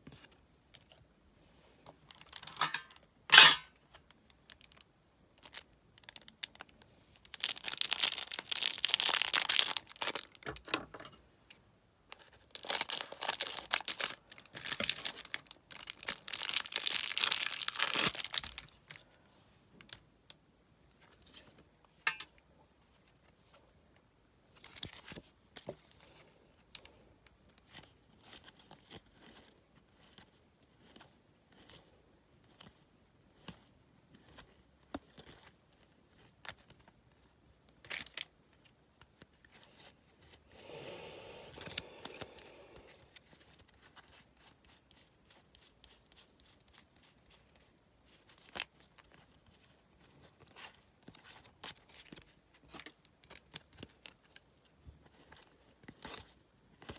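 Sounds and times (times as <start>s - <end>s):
wrapper tearing and rustling: 2.1s - 3.5s, 5.4s - 10.5s, 12.1s - 18.8s
wrapper snapping: 7.3s - 10.4s, 12.5s - 18.7s.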